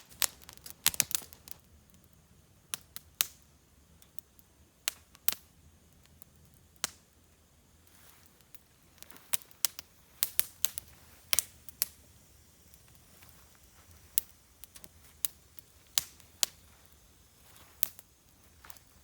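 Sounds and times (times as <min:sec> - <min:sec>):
clicks of small hard objects: 0:00.0 - 0:01.6.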